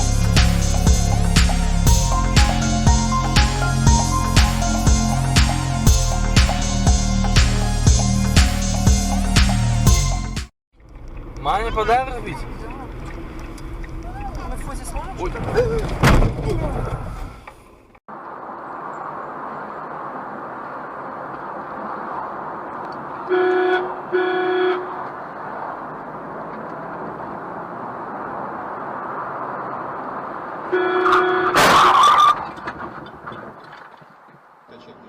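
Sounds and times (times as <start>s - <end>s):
car road and engine noise: 0.0s - 34.7s
car horn honks: 23.3s - 25.0s, 30.7s - 32.2s
loud collision crash: 31.5s - 34.0s.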